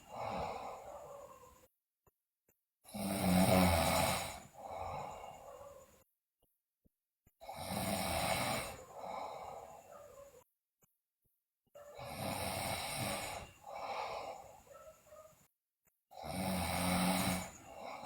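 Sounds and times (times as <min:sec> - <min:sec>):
girl snoring: 0:00.0 - 0:01.5, 0:02.9 - 0:05.9, 0:07.4 - 0:10.1, 0:11.8 - 0:14.8, 0:16.1 - 0:18.0.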